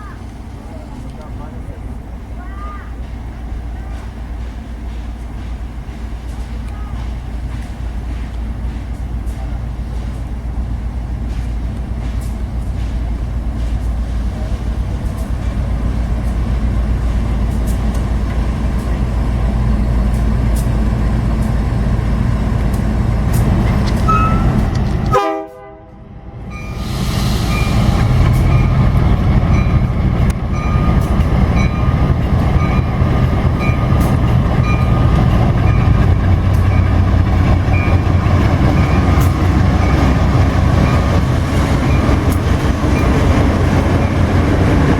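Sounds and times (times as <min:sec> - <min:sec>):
freight train rumbling: 0:00.0 - 0:44.9.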